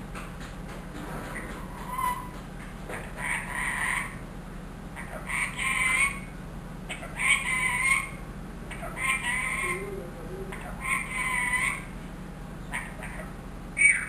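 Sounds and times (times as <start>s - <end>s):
steady low hum: 0.0s - 14.0s
parakeet squeaky vocalizing: 1.7s - 2.3s, 3.2s - 4.2s, 5.0s - 6.3s, 6.9s - 9.9s, 10.5s - 11.9s, 12.7s - 14.0s.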